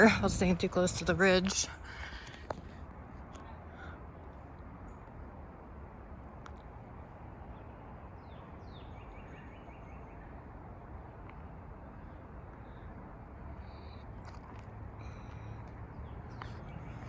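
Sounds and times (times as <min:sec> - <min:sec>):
low background rush: 0:00.0 - 0:17.0
songbird chirping: 0:07.3 - 0:17.0.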